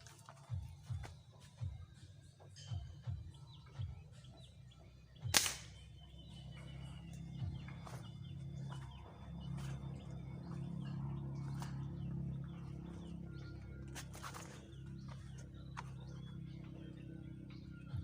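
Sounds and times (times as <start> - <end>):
low steady hum: 0.0 - 18.0
airgun crack: 5.3 - 5.9.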